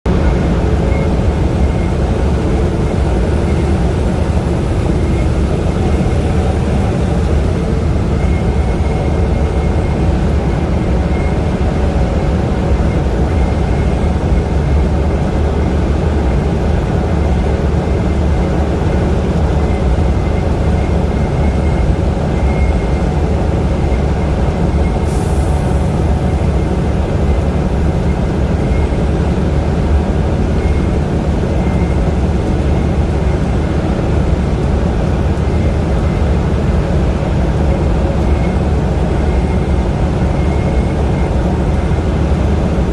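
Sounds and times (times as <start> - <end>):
vehicle engine and road noise: 0.0 - 42.9
brief high hiss: 25.0 - 26.2.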